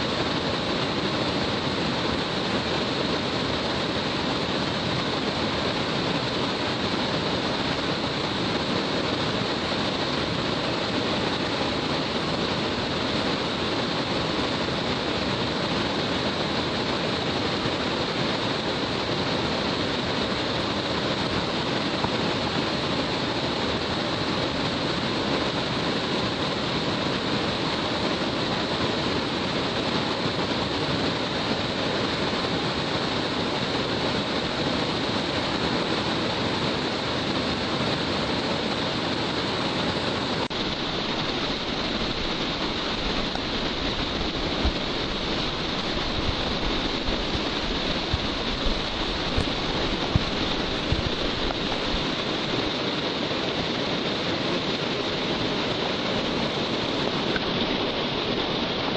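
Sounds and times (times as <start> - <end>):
waterfall rushing: 0.0 - 58.9
wind bumps on microphone: 32.7 - 58.7.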